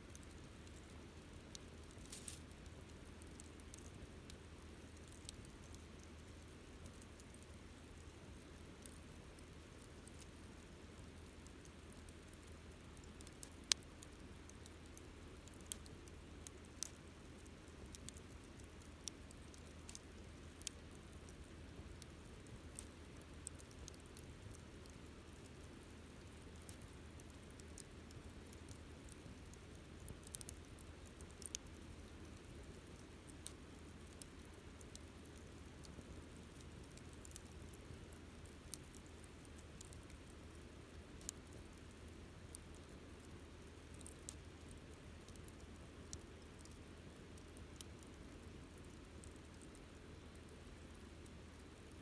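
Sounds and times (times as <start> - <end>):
faint steady hiss: 0.0 - 52.0
campfire crackling and popping: 0.1 - 52.0.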